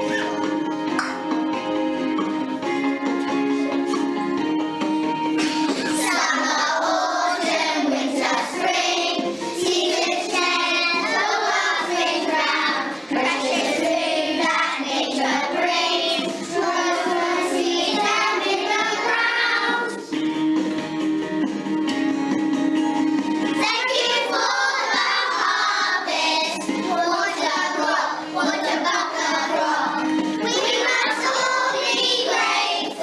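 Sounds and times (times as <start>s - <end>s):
musical backing track: 0.0s - 33.0s
children singing: 5.4s - 20.2s, 23.5s - 33.0s.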